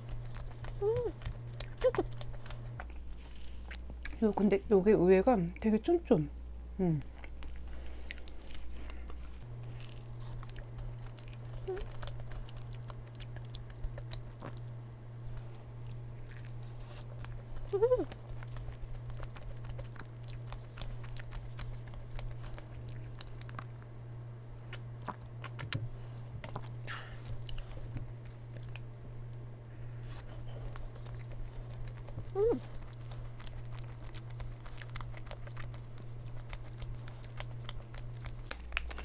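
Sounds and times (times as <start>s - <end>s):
close-miked chewing: 0.0s - 4.5s, 7.0s - 39.0s
crust crunching: 7.3s - 23.8s.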